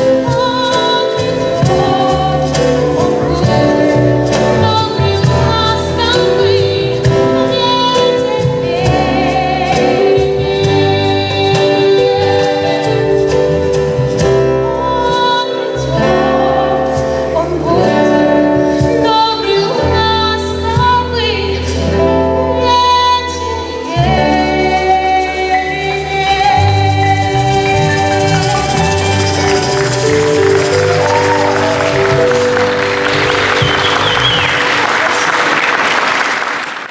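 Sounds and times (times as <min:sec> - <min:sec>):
woman singing slow song: 0:00.0 - 0:13.5, 0:14.7 - 0:28.6
instrumental accompaniment: 0:00.0 - 0:36.9.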